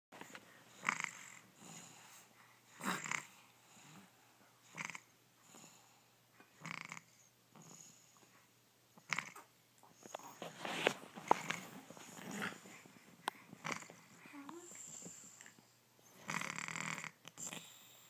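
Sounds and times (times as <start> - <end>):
soft breaths: 0.2 - 8.7, 9.3 - 16.5, 17.1 - 18.0
baby snoring: 0.7 - 2.2, 2.8 - 4.1, 4.7 - 5.8, 6.6 - 8.1, 9.0 - 9.5, 10.1 - 15.5, 16.1 - 18.0.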